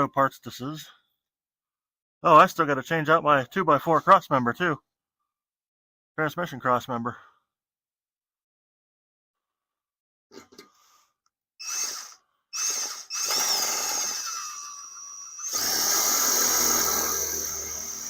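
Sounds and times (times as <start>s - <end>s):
power drill driving screw into steel: 11.6s - 18.0s.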